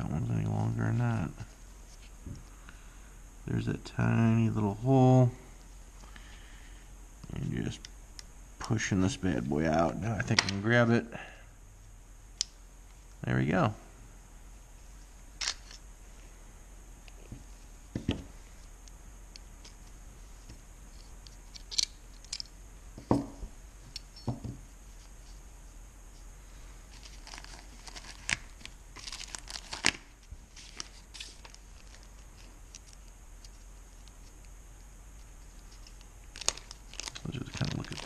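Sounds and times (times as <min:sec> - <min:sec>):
rustling: 0:00.4 - 0:02.9, 0:17.0 - 0:38.0
pistol parts clicking: 0:21.5 - 0:22.5.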